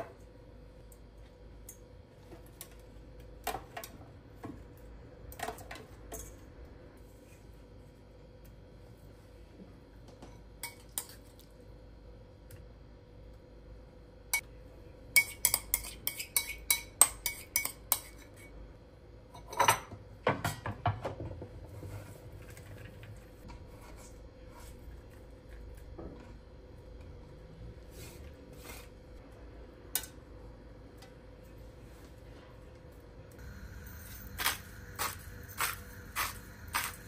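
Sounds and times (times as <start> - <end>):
faint steady hum: 0.0 - 37.0
dishes and cutlery clinking: 19.3 - 21.1.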